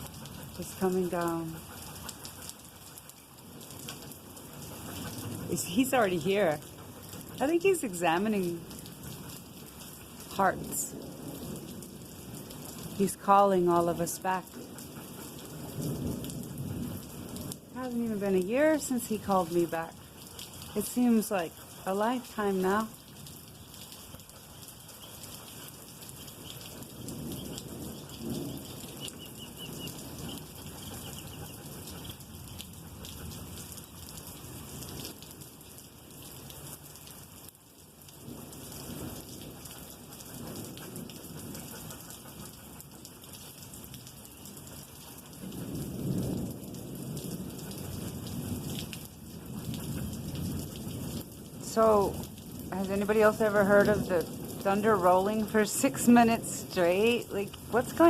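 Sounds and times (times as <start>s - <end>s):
steady rain falling: 0.0s - 58.0s
rolling thunder rumbling: 3.5s - 35.2s, 44.5s - 58.0s.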